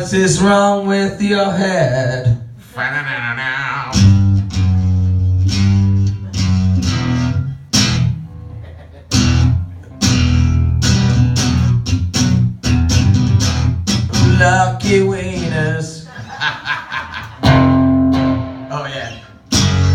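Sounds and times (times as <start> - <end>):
bass guitar notes: 3.7 - 16.1, 17.3 - 19.9
acoustic guitar strumming: 3.9 - 16.1, 17.3 - 19.9.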